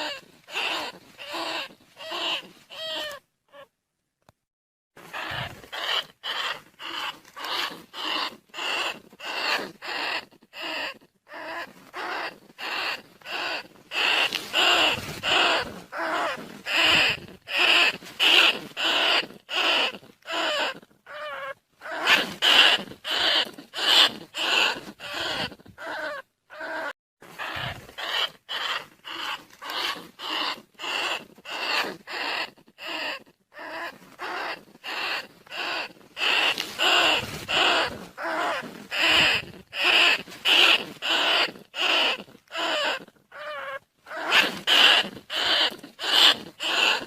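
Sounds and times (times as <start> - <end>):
rat squeaks: 0.0 - 3.7, 5.0 - 47.0.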